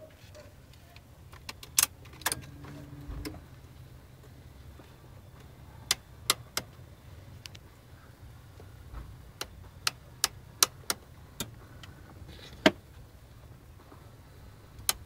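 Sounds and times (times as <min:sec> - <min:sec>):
steady low hum: 0:00.0 - 0:15.0
brief low whir: 0:02.3 - 0:03.6
irregular clicking behind dashboard: 0:08.6 - 0:12.0.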